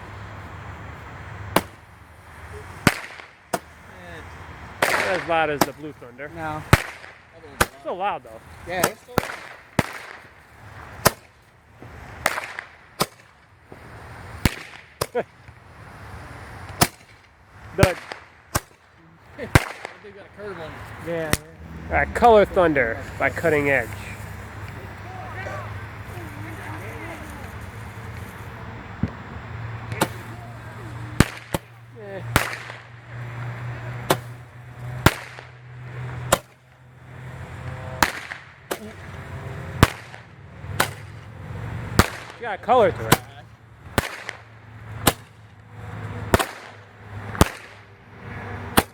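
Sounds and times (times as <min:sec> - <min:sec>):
roman candle firing bangs: 0:01.5 - 0:21.5, 0:22.2 - 0:30.4, 0:31.2 - 0:36.6, 0:37.2 - 0:41.2, 0:41.9 - 0:45.4, 0:46.2 - 0:47.9
roman candle bangs: 0:04.8 - 0:07.9.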